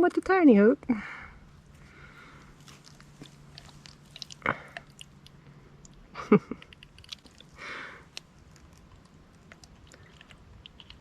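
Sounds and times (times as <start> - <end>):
faint low hum: 0.0 - 11.0
hands handling a fish: 1.7 - 5.9.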